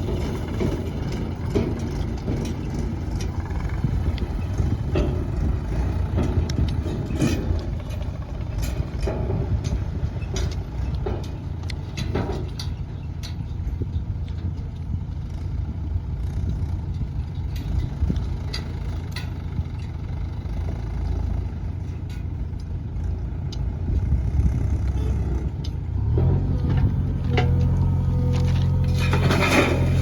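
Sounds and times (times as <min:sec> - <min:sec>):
diesel engine rumbling: 0:00.0 - 0:30.0
sharp metallic clanks: 0:04.4 - 0:14.9.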